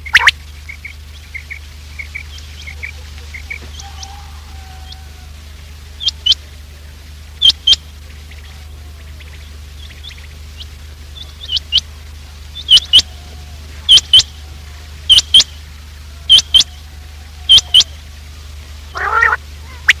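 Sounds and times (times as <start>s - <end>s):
lower pitched call: 0.0s - 20.0s
quail call lure notes: 7.4s - 20.0s.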